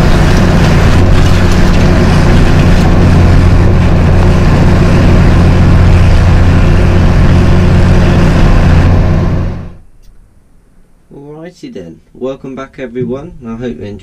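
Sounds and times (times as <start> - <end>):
tractor engine humming: 0.0 - 10.8.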